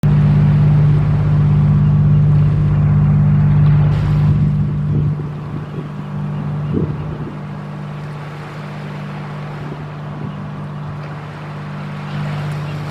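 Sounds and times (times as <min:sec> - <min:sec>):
engine running with low hum: 0:00.0 - 0:12.9.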